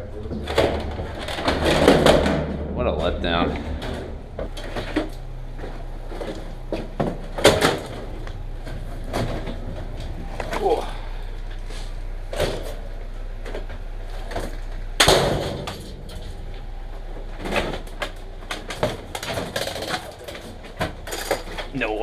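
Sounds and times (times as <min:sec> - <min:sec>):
steady low hum: 0:00.0 - 0:22.0
objects knocking and clattering: 0:00.2 - 0:10.6, 0:17.4 - 0:21.8.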